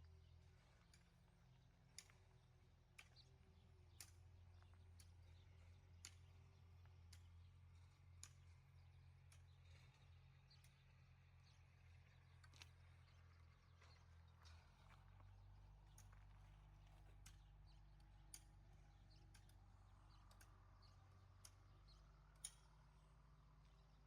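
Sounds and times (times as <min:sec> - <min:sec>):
faint sharp clicks: 0:03.0 - 0:10.8, 0:14.4 - 0:23.0.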